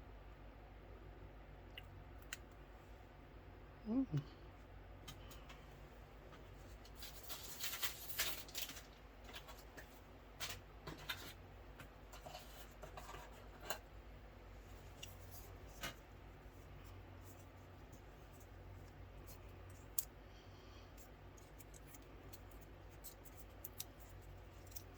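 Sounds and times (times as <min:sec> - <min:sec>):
packaging rustling and crinkling: 0:06.9 - 0:09.8.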